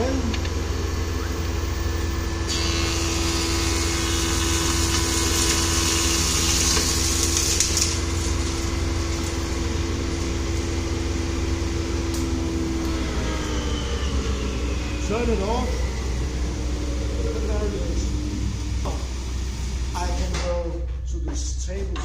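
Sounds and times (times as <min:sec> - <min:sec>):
thickness planer humming: 0:00.0 - 0:21.0
planer cutting hiss: 0:02.5 - 0:08.4.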